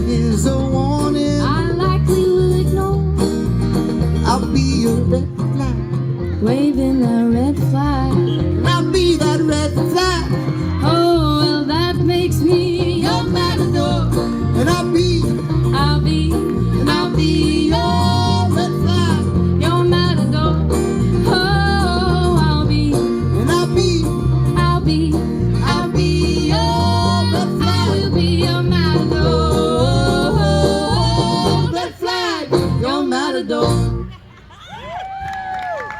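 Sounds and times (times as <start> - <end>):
bending lead guitar melody: 0.0 - 31.6
country band playing: 0.0 - 34.8.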